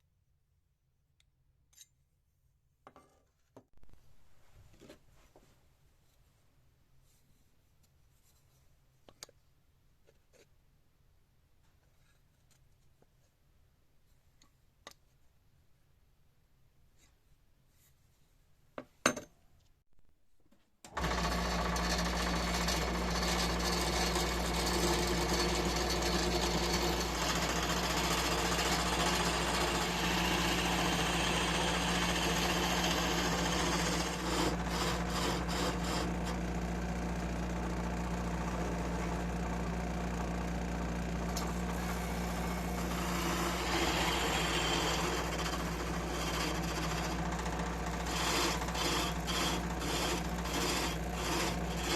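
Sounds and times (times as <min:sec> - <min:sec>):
power tool motor running: 0:21.0 - 0:51.9.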